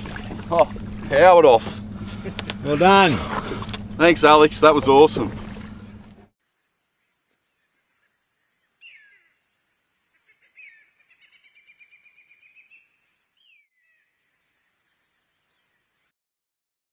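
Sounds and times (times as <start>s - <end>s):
bird whistling calls: 8.8s - 9.4s, 10.1s - 14.1s.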